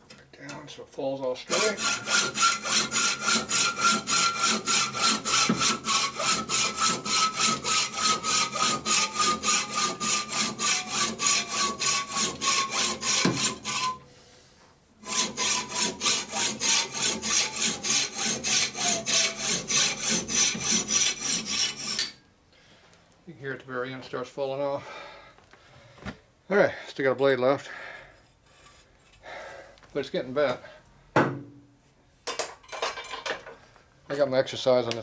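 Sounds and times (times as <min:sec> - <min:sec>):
hacksaw cutting metal: 0:01.5 - 0:14.0, 0:15.0 - 0:22.2.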